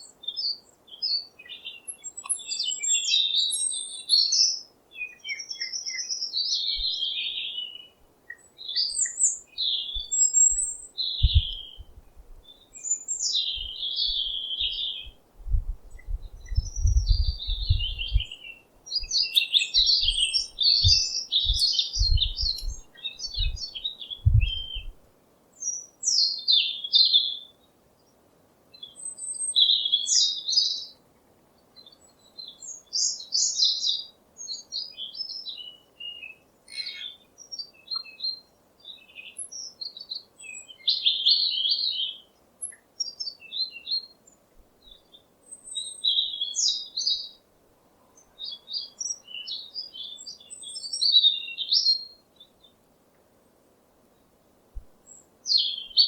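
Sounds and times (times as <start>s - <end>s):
small birds chirping: 0.0s - 31.0s, 31.6s - 54.4s, 55.0s - 56.0s
faint steady hiss: 0.0s - 56.0s
low thumps: 15.4s - 18.3s, 20.8s - 22.8s, 24.2s - 24.9s.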